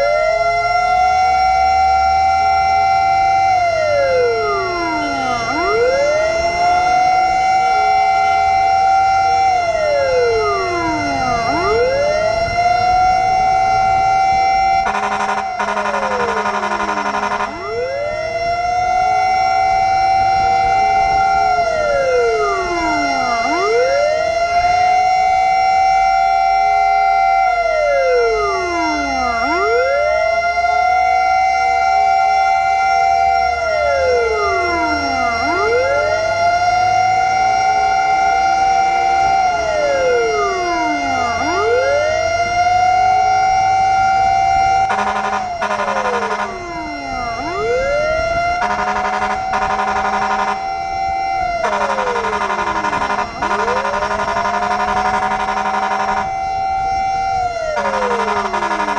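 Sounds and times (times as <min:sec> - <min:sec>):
fire truck siren wailing: 0:00.0 - 0:58.9
steady tone: 0:02.9 - 0:23.9, 0:43.8 - 0:58.9
harsh pulsing horn blast: 0:06.8 - 0:18.0, 0:42.7 - 0:58.9.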